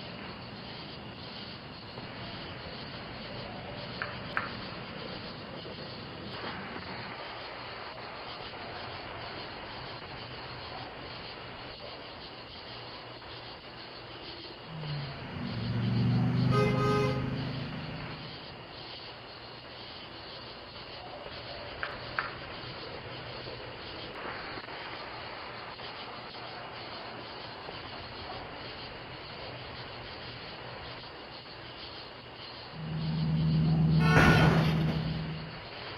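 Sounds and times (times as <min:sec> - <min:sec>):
background hiss: 0:00.0 - 0:35.9
vehicle horn: 0:16.4 - 0:17.7, 0:33.7 - 0:35.5.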